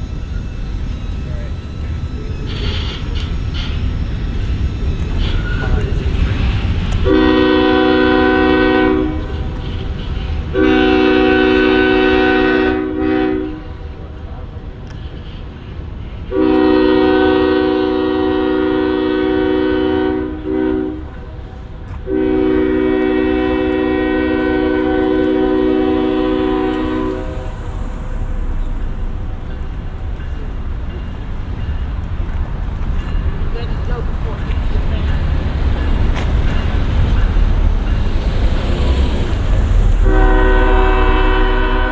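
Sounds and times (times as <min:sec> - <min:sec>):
locomotive air horn blasts: 0:07.0 - 0:14.0, 0:16.3 - 0:21.3, 0:22.0 - 0:27.7, 0:40.0 - 0:41.9
diesel engine low rumble: 0:19.3 - 0:41.9.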